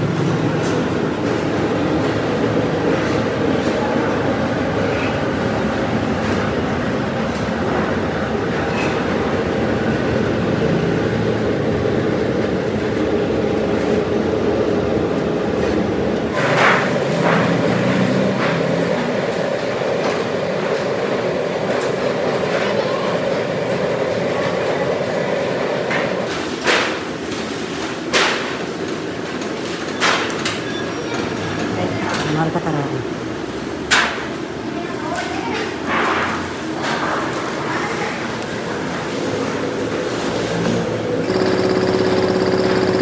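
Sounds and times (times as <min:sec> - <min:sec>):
machinery hum: 0:41.2 - 0:43.0.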